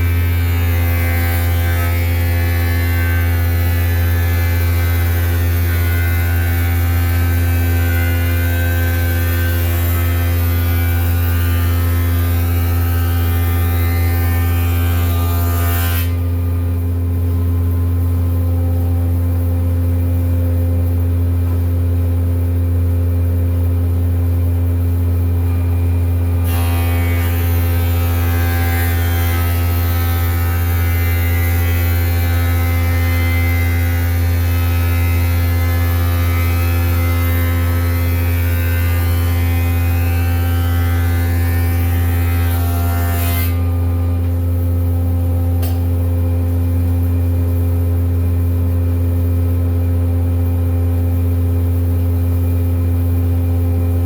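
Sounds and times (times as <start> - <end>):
high-pitched wood cutting noise: 0.0 - 16.3.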